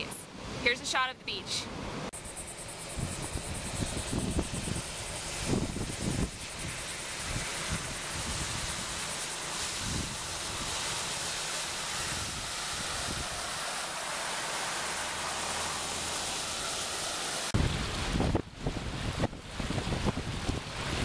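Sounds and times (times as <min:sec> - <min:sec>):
gusty wind buffeting microphone: 0:02.7 - 0:21.0
waves breaking: 0:04.8 - 0:21.0.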